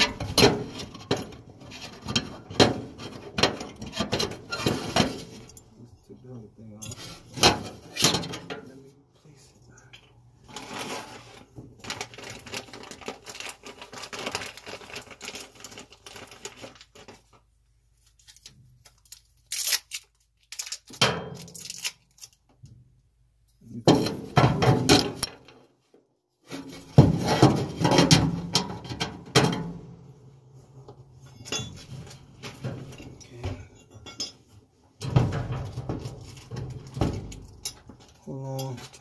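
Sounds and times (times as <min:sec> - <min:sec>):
metal and plastic parts clunking: 0:00.0 - 0:05.6, 0:06.8 - 0:08.7.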